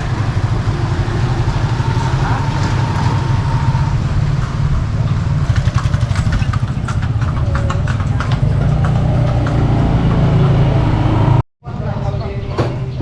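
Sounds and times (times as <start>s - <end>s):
horse hooves clopping on road: 0.0s - 11.1s
vehicle engine running: 0.0s - 11.4s.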